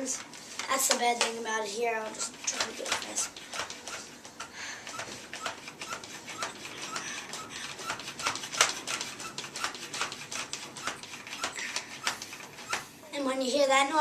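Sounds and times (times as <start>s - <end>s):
toy blaster pump clicks and squeaks: 4.9s - 10.2s, 10.8s - 12.8s.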